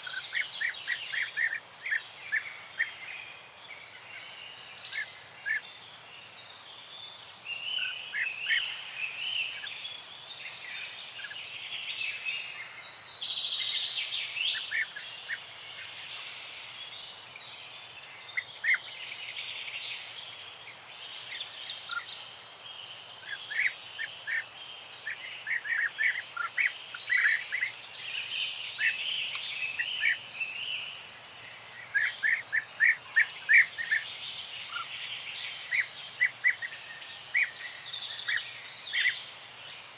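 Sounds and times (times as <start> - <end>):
faint background hiss: 0.0 - 39.9
songbirds singing and chirping: 0.0 - 39.9.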